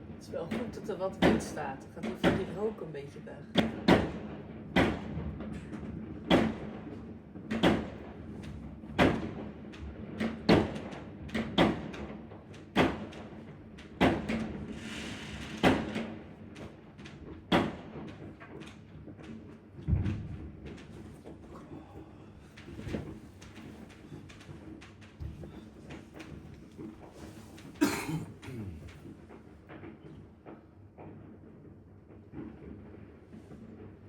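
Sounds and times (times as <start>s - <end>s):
firework hiss: 14.7s - 15.6s.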